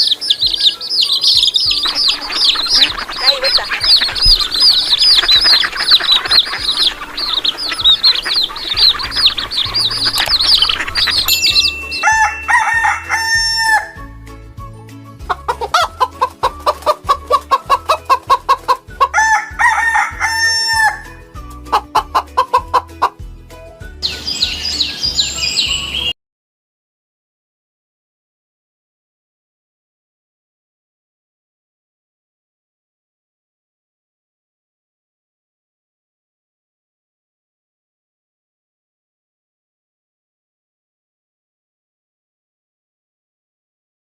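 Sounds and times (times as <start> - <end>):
chicks peeping: 0.0 - 14.0, 15.2 - 19.4, 21.8 - 23.2, 24.0 - 26.1
chickens clucking and crowing: 0.0 - 14.1, 15.2 - 23.2.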